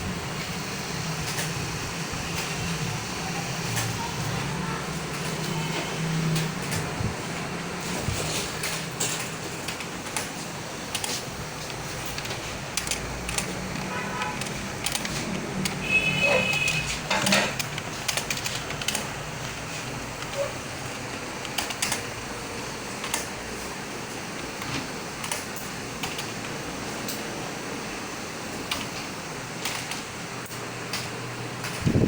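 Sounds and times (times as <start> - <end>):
keyboard keys clicking: 5.1 - 27.3, 28.6 - 32.0.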